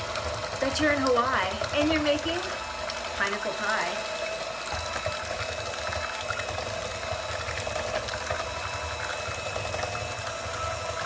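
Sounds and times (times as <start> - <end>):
electric hand mixer running: 0.0 - 11.0.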